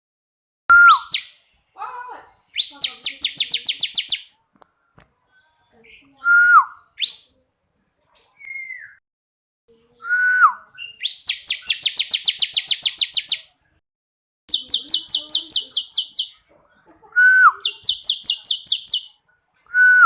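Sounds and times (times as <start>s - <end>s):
bird whistling downward: 0.7s - 1.3s, 2.6s - 4.3s, 10.0s - 13.5s, 14.5s - 16.4s, 17.2s - 19.1s.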